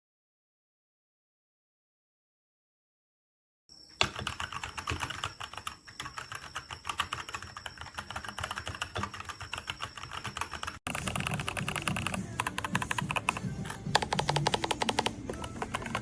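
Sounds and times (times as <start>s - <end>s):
fast typing on mechanical keyboard: 4.0s - 16.0s.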